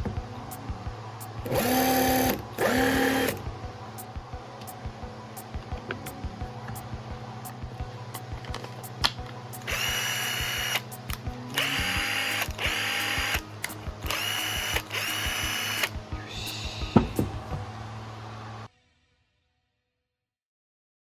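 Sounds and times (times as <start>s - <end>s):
impact driver whining: 1.4s - 3.4s.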